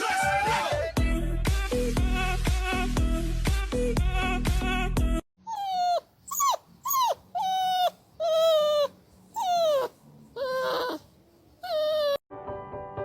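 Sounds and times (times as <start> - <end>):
dog whining yelps: 5.4 - 12.2.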